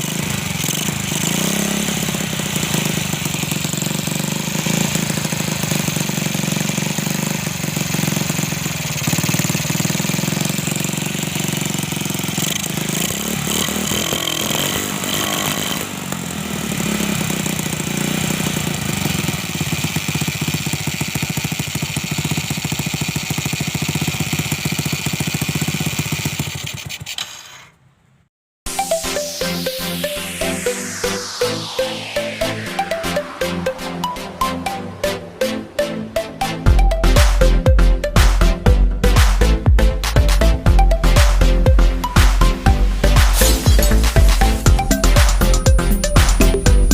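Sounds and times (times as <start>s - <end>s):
relay buzzing and chattering: 43.2s - 46.9s.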